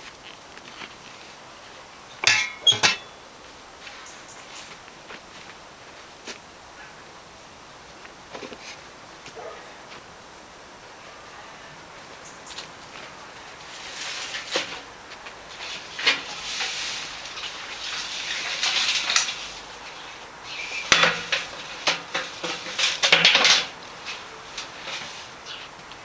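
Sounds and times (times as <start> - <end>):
rustling: 0.0 - 6.9, 12.0 - 26.0
metal objects clinking: 2.2 - 3.2.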